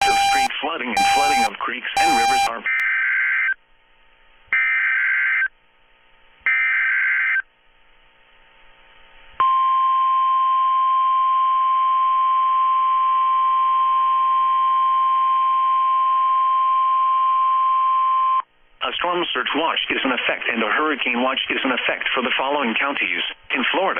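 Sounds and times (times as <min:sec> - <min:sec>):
screechy digital data bursts: 0:00.0 - 0:03.2
steady warning alarm tone: 0:00.0 - 0:03.5.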